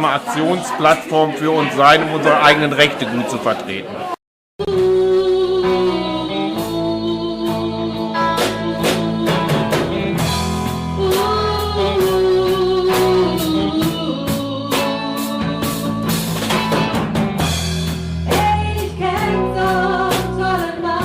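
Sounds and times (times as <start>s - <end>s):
person singing long held notes: 4.6s - 16.3s
live rock band playing: 4.6s - 21.0s.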